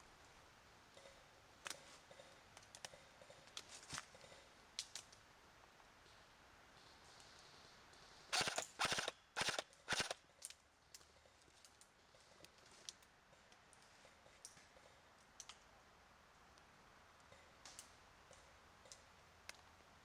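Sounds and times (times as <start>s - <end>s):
airsoft rifle automatic fire: 8.4s - 10.2s
faint clicks and snaps: 15.3s - 15.7s, 16.5s - 19.7s.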